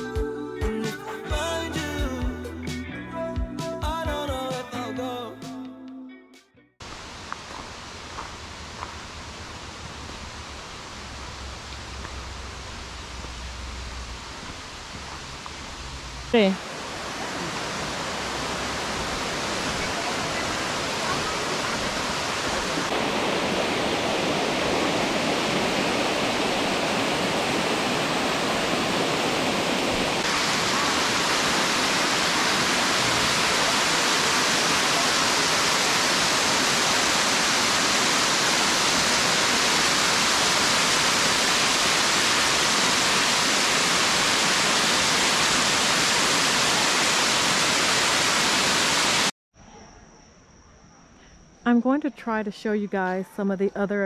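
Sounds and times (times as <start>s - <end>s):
rushing falling water: 6.8s - 49.3s.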